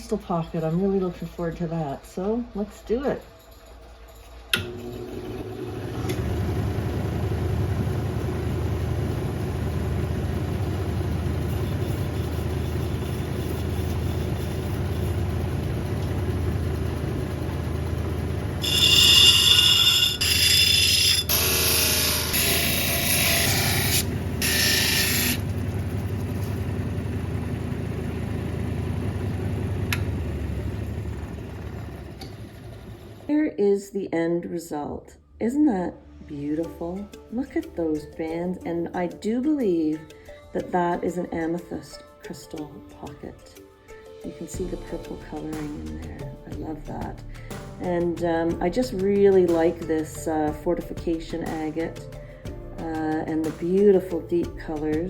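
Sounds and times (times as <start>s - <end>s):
machine motor humming: 4.5s - 33.3s
harsh grinding noise: 9.9s - 28.8s.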